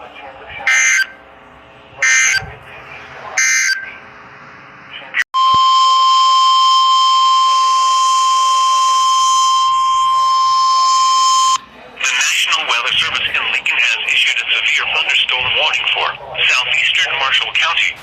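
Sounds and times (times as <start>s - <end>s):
steady warning alarm tone: 0.7s - 1.2s, 2.0s - 2.5s, 3.4s - 4.0s, 5.4s - 11.7s.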